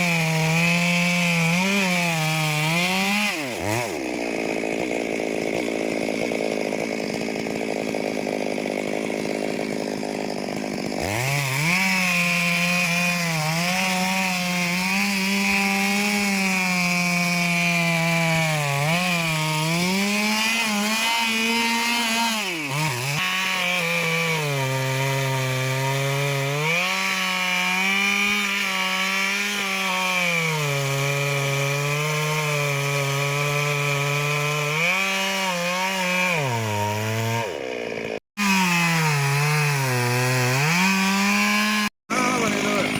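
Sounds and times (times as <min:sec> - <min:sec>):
chainsaw cutting into trunk: 0:00.0 - 0:42.9.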